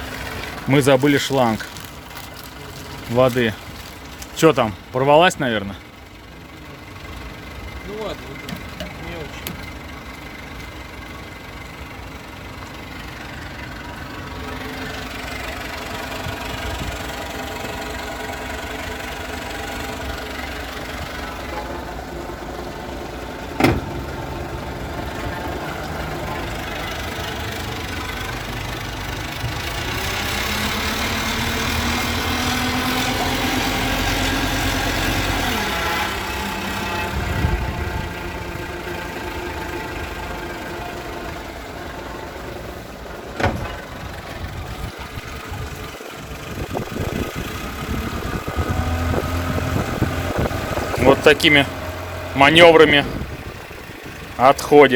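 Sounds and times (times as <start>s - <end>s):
boat motor running: 13.6s - 54.9s.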